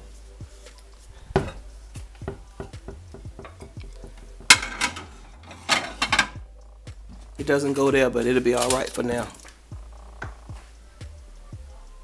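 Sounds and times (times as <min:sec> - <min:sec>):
crockery clinking: 0:01.1 - 0:06.4
dishes clattering: 0:02.3 - 0:06.4.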